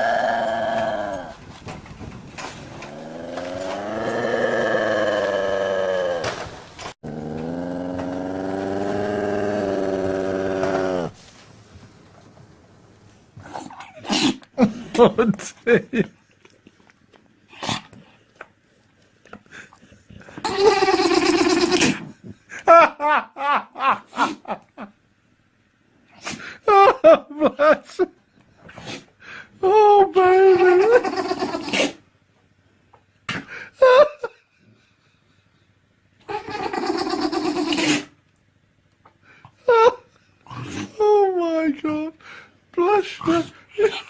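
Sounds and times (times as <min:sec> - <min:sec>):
animal raspy drawn-out call: 0:02.8 - 0:06.5, 0:07.1 - 0:11.2.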